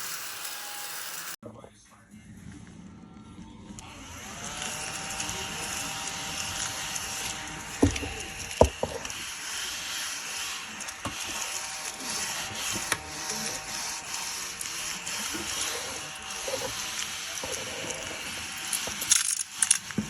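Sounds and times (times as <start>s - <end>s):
mini vacuum cleaner whirring: 0.0s - 1.4s, 3.7s - 20.0s
debris clicking and rattling: 14.5s - 20.0s.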